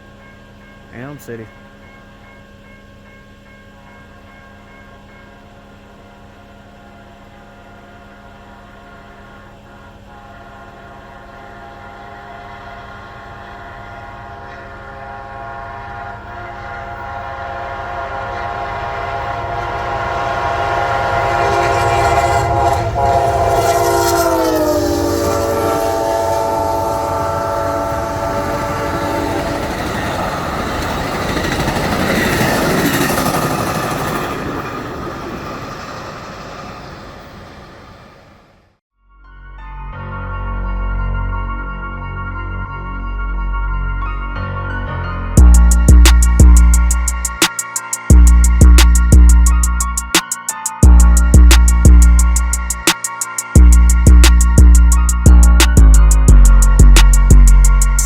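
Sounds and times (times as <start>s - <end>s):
passenger train rushing by: 4.6s - 38.7s, 45.4s - 58.0s
train horn blowing: 6.8s - 30.4s.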